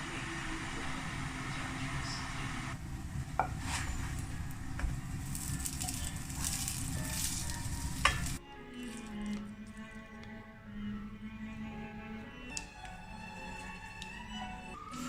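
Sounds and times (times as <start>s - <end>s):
food sizzling in a frying pan: 3.2s - 8.4s
utensil clinking against pan: 5.4s - 8.4s.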